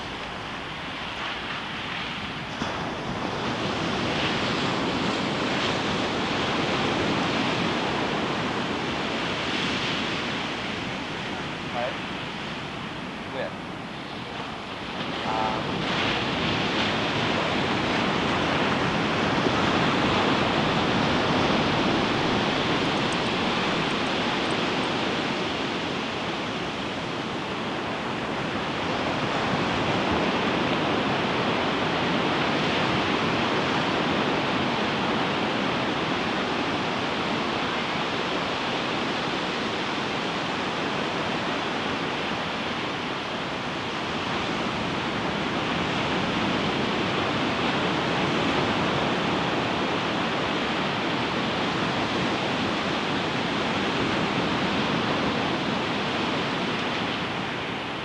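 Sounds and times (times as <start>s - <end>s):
ocean surf breaking: 0.0s - 38.0s.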